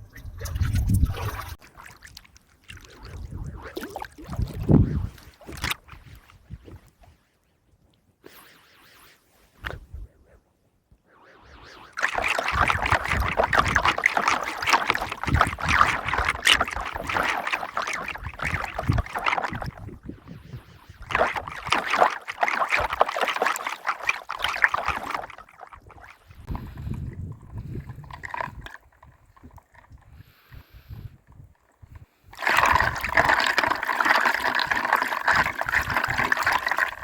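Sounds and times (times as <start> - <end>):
water squirting in plastic toy: 0.0 - 6.9, 11.6 - 37.0.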